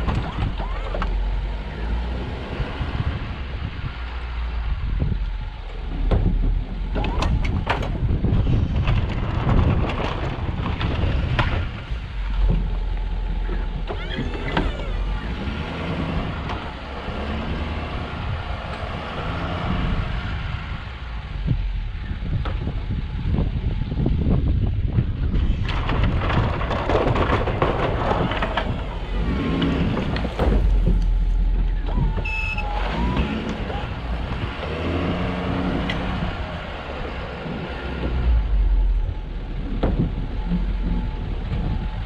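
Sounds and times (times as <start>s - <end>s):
truck engine and road rumble: 0.0s - 42.0s
sharp knocks and clatters: 25.0s - 35.2s, 39.6s - 41.8s.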